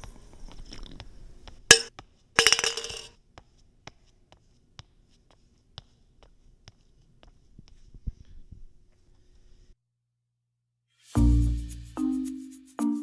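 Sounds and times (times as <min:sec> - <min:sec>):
small hard objects clinking: 0:01.7 - 0:03.1.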